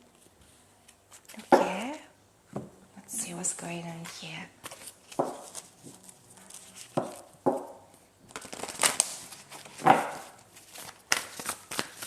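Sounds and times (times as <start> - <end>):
cards being shuffled: 4.0 - 7.7, 8.3 - 12.0.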